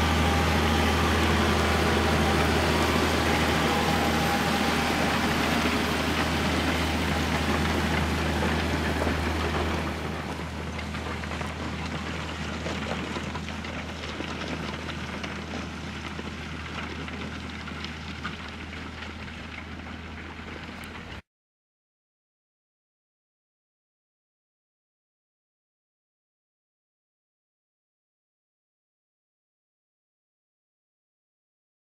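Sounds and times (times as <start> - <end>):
noisy rush: 0.0 - 12.0
vehicle engine droning: 0.0 - 21.2.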